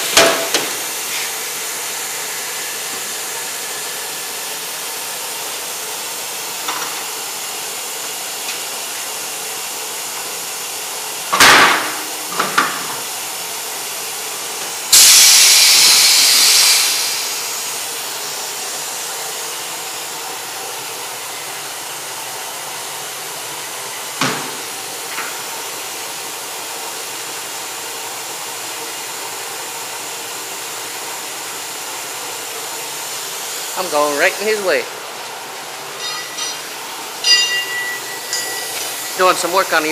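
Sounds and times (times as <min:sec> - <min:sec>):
tire machine clank: 0:00.0 - 0:00.9, 0:11.3 - 0:13.0, 0:35.9 - 0:39.2
compressed air hissing out: 0:14.9 - 0:18.2.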